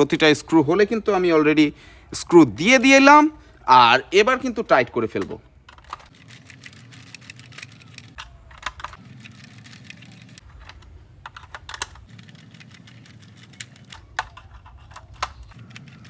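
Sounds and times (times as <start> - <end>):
screwdriver clicking on plastic: 5.2 - 16.0.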